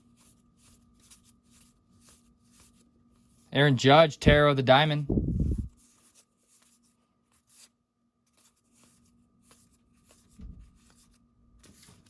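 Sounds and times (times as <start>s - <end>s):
low steady hum: 3.6s - 5.8s
trading cards swishing and clicking: 3.8s - 6.8s
dull thump: 10.4s - 10.7s.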